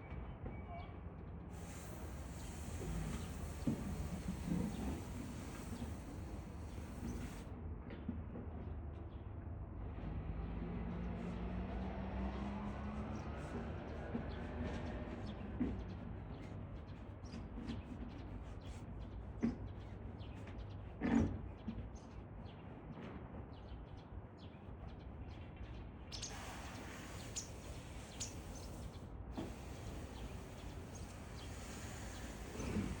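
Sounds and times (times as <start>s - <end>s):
faint bird chirps: 1.6s - 7.4s, 26.1s - 33.0s.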